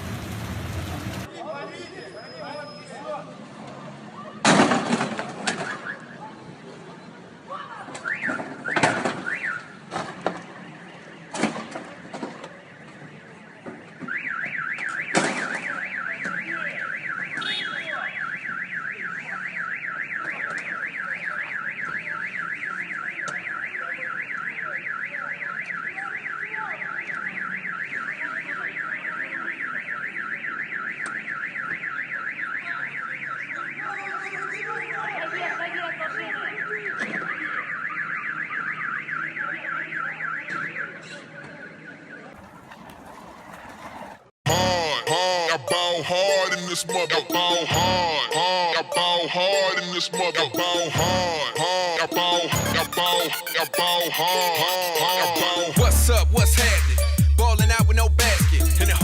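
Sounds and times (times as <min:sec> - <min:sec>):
warbling electronic alarm: 0:44.5 - 0:59.0.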